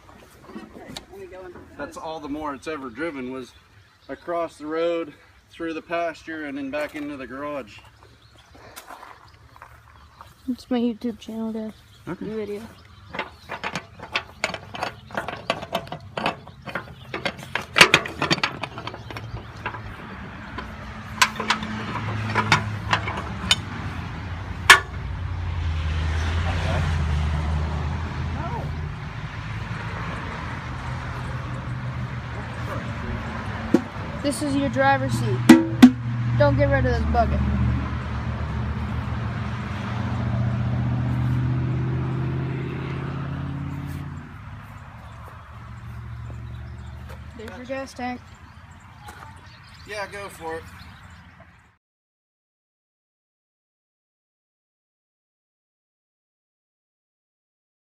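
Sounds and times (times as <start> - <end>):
low engine hum: 9.2 - 51.5.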